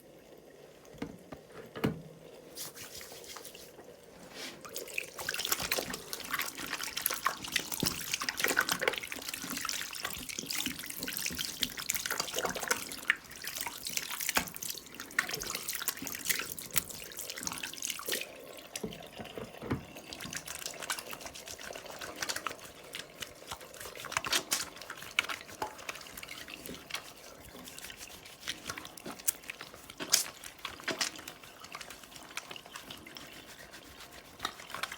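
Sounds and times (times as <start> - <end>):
tap running: 0.8 - 2.2, 18.8 - 20.4.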